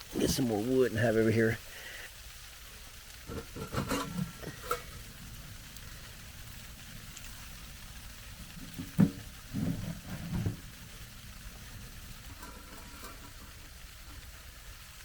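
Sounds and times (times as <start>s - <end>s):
freezing rain on tent roof: 0.0s - 15.0s
firewood knocking and clattering: 3.2s - 14.8s.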